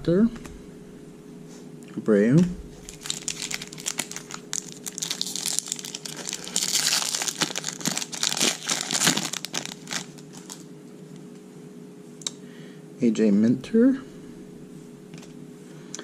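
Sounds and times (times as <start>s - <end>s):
foil wrapper crinkling and tearing: 2.8s - 10.7s.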